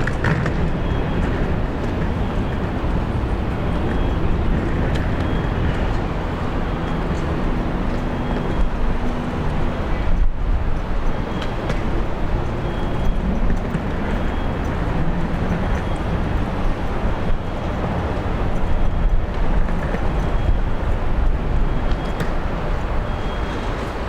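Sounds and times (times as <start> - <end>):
faint engine hum: 0.0 - 24.0
traffic rumble: 0.0 - 24.0.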